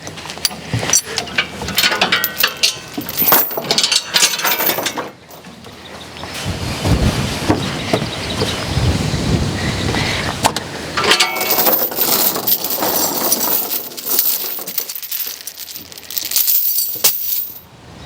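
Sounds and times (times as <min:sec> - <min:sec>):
rattling: 0:00.5 - 0:05.4, 0:11.0 - 0:17.6
hard objects knocking and clinking: 0:11.0 - 0:17.6.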